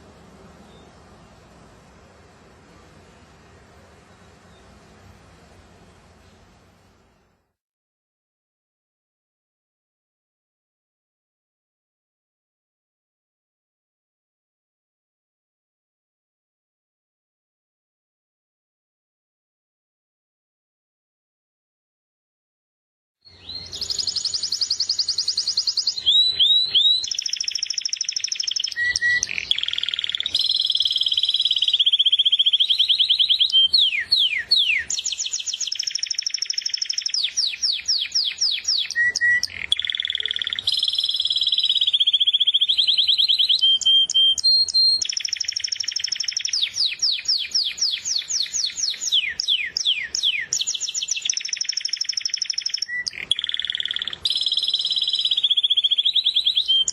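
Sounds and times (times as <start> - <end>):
canary singing trills: 23.2 - 56.9.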